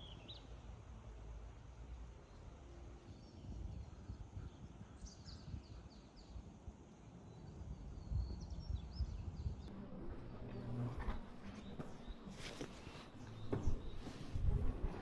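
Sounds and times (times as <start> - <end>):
small birds chirping: 0.0 - 0.8, 2.1 - 9.7
low outdoor rumble: 7.7 - 15.0.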